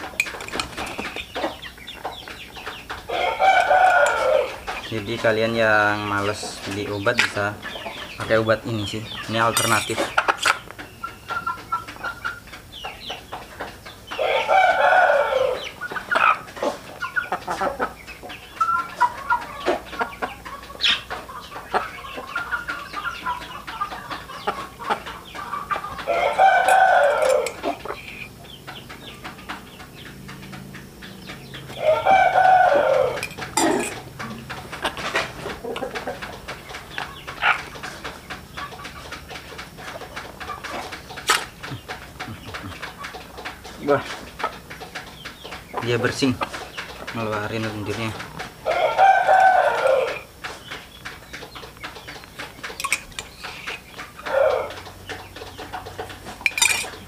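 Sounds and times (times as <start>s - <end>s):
chicken calls: 0.0s - 57.0s
rooster crowing: 3.1s - 4.7s, 14.2s - 15.7s, 26.0s - 27.9s, 31.7s - 34.0s, 48.6s - 50.3s, 54.3s - 54.8s
scattered clicks: 49.5s - 57.0s.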